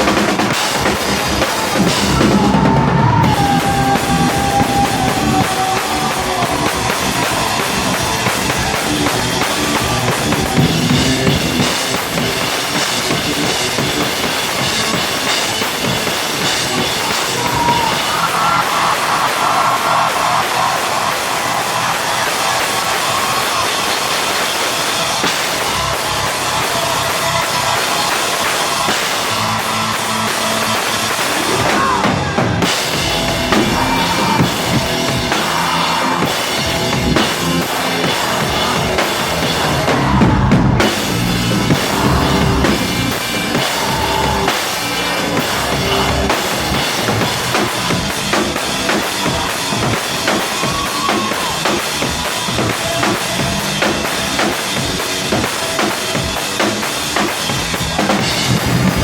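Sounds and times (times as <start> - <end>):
bass drum: 0.0 - 18.6, 31.0 - 59.0
live rock band: 0.0 - 59.0.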